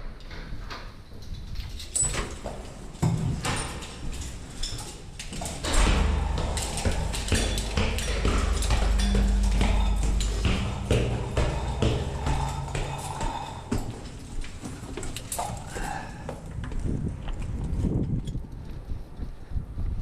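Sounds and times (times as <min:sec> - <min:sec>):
knocks and clicks of handled gear: 0:01.2 - 0:17.4
gusty wind on microphone: 0:16.6 - 0:20.0.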